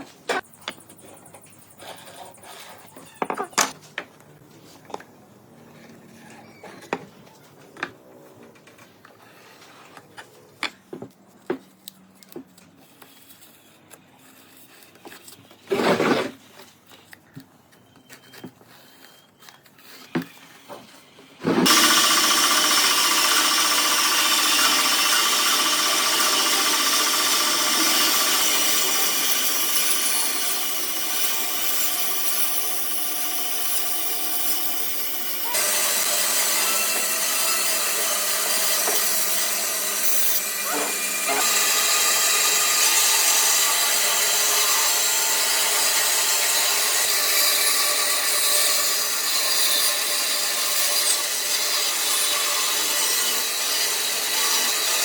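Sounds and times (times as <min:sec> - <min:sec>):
power tool whining on wood: 0:21.6 - 0:55.0.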